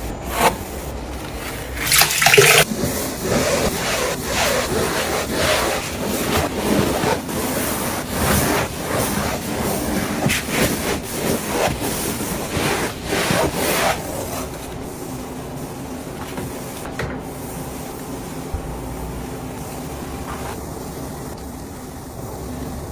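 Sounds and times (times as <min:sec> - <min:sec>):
steady background noise: 0:00.0 - 0:22.9
scrubbing on a hard surface: 0:00.3 - 0:18.6.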